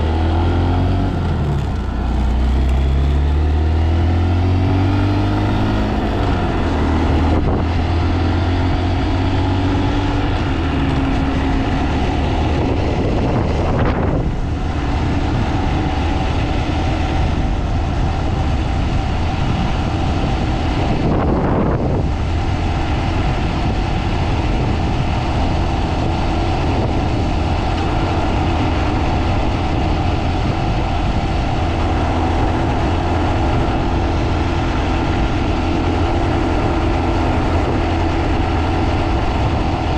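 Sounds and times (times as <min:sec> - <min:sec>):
motorcycle engine running: 0:00.0 - 0:39.9
wind buffeting microphone: 0:00.0 - 0:39.9.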